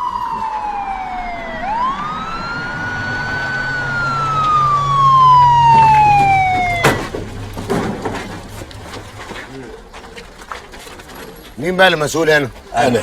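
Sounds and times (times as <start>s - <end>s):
police car siren wailing: 0.0s - 7.7s
sharp bang: 0.0s - 8.4s.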